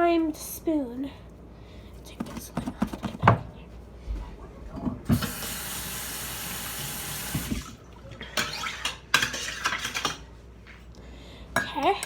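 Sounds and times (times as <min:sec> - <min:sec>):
water running from tap: 0:05.2 - 0:07.8.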